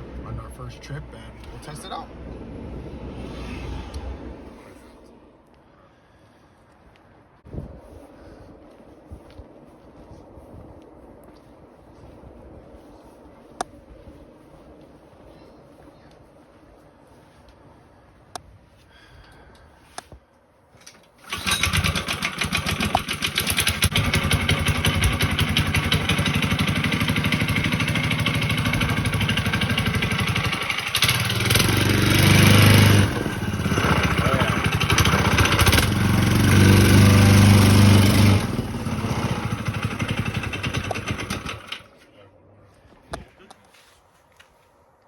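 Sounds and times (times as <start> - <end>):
small engine running and revving: 21.3 - 41.9.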